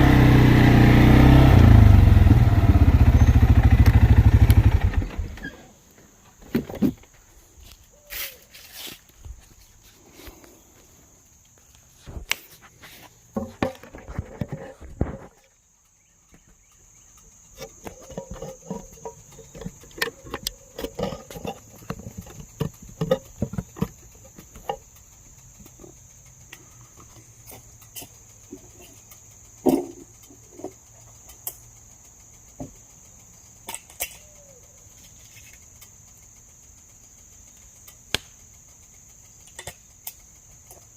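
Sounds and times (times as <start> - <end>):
crickets trilling: 1.4 - 40.9
sharp crack: 38.1 - 38.5.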